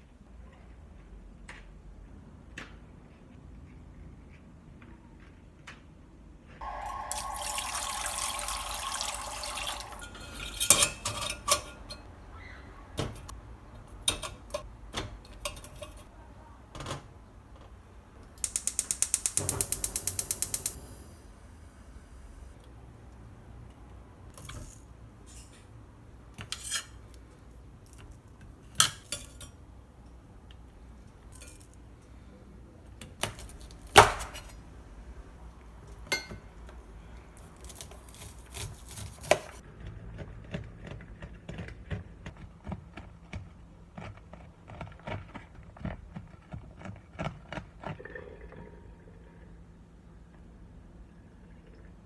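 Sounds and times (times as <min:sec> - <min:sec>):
utensils and dishes clinking: 0:06.6 - 0:32.4, 0:33.0 - 0:39.6.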